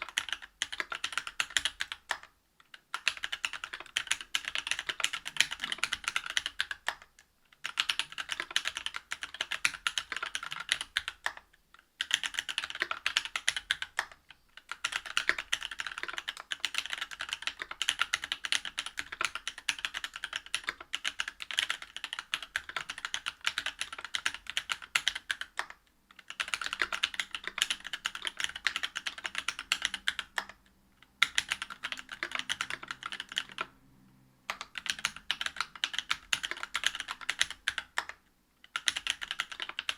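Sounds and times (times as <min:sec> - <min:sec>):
typing on mechanical keyboard: 0:00.0 - 0:33.8, 0:34.5 - 0:39.9.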